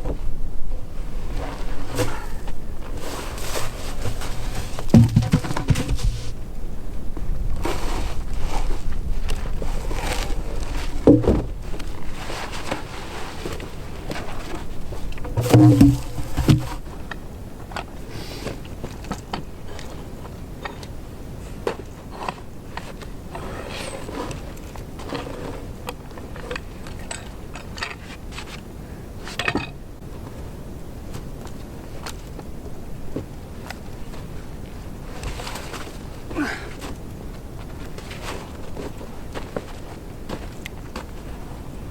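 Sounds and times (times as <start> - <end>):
heavy thumps: 4.0 - 6.4, 11.0 - 11.6, 15.2 - 16.9.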